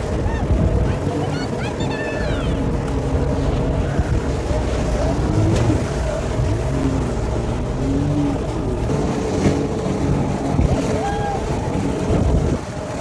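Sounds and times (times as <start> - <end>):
faint voices: 0.0 - 8.9
boat engine running: 0.0 - 13.0.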